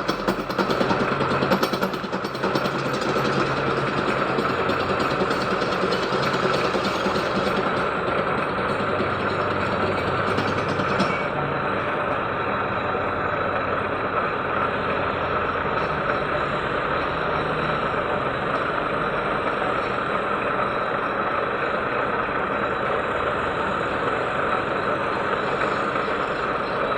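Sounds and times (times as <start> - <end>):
lathe tool grinding: 2.5 - 11.3.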